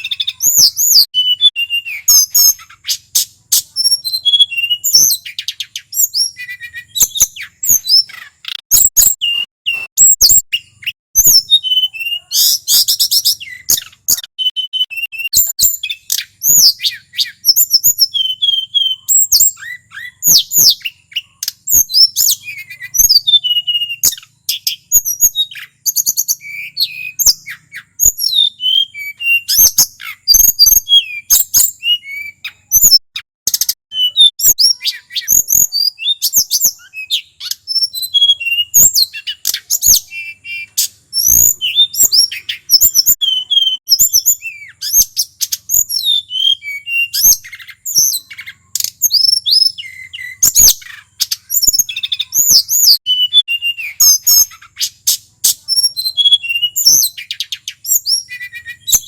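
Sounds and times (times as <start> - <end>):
bird singing whistled trills: 0.0 - 59.0.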